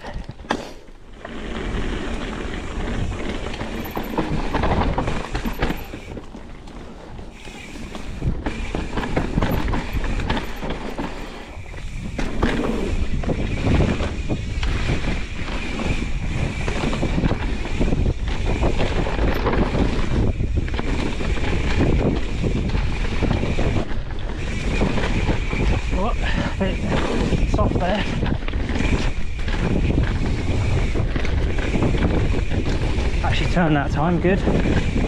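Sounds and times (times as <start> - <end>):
bike rattling: 0.0 - 35.0
wind on microphone: 1.3 - 35.0.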